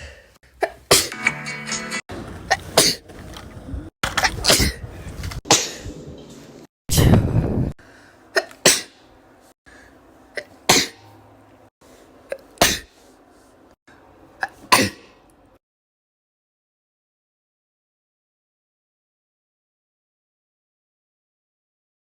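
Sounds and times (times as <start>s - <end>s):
person sneezing: 0.0s - 1.2s, 2.5s - 3.0s, 4.4s - 4.8s, 8.3s - 9.0s, 10.4s - 11.0s, 12.3s - 13.0s, 14.4s - 15.2s.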